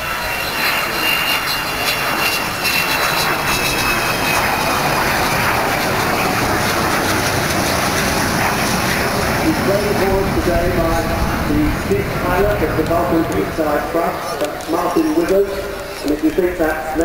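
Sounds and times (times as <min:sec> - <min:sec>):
jet aircraft roar: 0:00.0 - 0:17.0.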